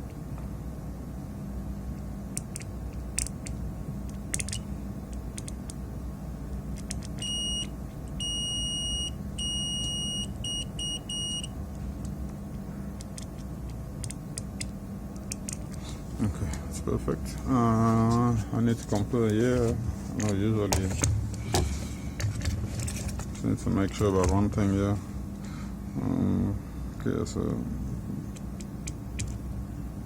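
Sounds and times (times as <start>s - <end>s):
steady low hum: 0.0s - 30.0s
multimeter buzzer beeping: 7.2s - 11.6s.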